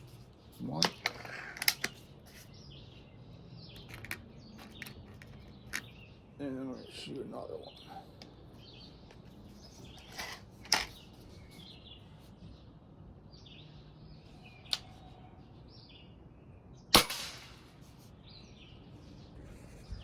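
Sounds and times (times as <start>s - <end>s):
small birds chirping: 0.0s - 20.0s
air rifle clicking: 17.0s - 17.7s.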